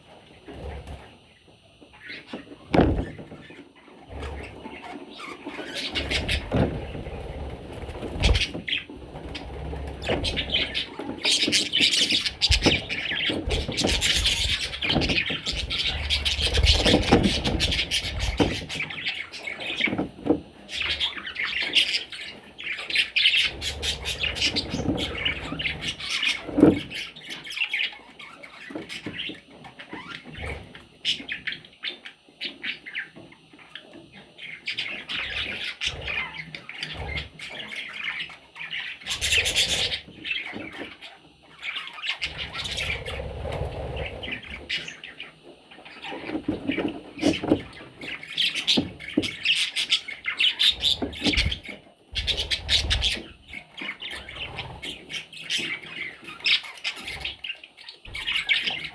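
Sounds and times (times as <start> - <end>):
budgerigars chirping and squawking: 0.4 - 58.9
bumps and rustling: 2.6 - 3.5.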